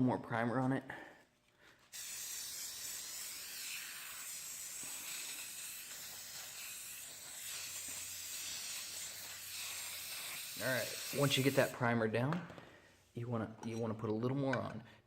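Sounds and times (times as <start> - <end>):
aerosol can spraying: 1.9 - 11.8.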